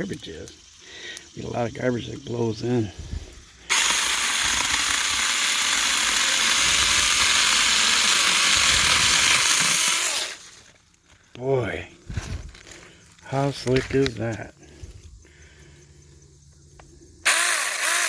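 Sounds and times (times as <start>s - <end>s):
mini chainsaw cutting a branch: 3.7s - 10.6s, 17.2s - 18.0s.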